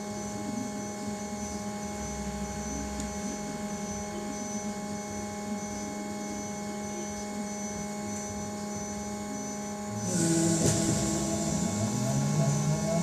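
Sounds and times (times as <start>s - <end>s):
electric traction motor whine: 0.0s - 13.0s
steady electrical hum: 0.0s - 13.0s
air hiss: 10.0s - 13.0s.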